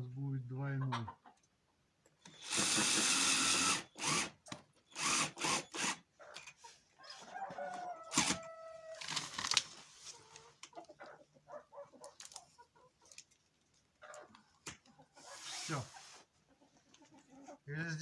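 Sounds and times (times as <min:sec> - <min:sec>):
chickens clucking: 0:00.6 - 0:02.1, 0:06.0 - 0:08.9, 0:09.8 - 0:17.7
bursts of work noise: 0:02.3 - 0:06.0, 0:08.1 - 0:08.4, 0:15.2 - 0:16.2
rooster crowing: 0:07.0 - 0:09.1.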